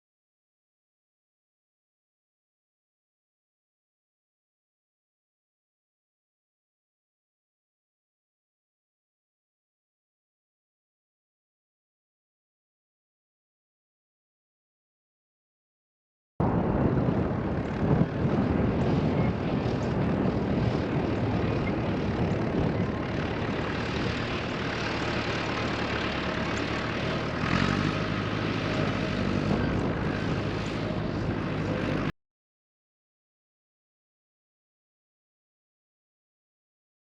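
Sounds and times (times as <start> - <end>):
motor engine running under load: 16.4 - 32.1.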